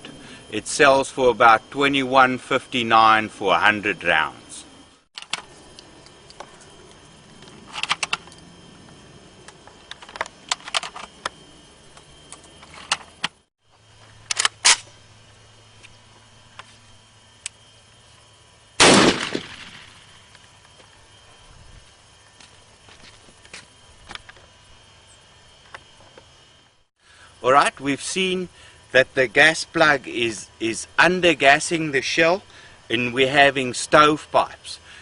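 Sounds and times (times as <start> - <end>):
loud shotgun shot: 18.8 - 20.1.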